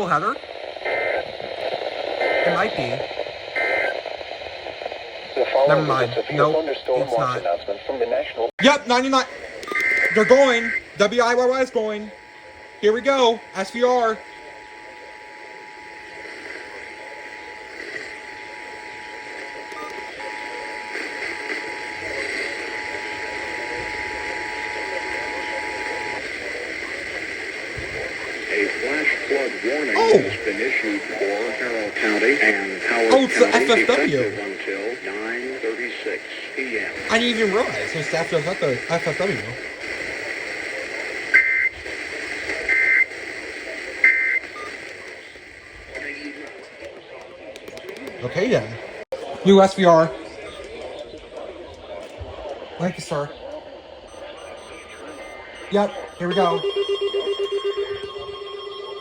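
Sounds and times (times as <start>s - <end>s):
broadcast static hiss: 0.0s - 59.0s
two-tone digital data bursts: 8.9s - 26.2s, 54.1s - 59.0s
two-tone alert alarm: 54.1s - 59.0s.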